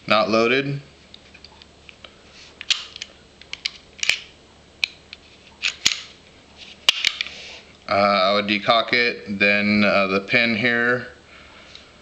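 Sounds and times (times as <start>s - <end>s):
pistol metallic clicks: 2.6s - 5.0s
pistol parts sliding scrapes: 5.3s - 7.6s.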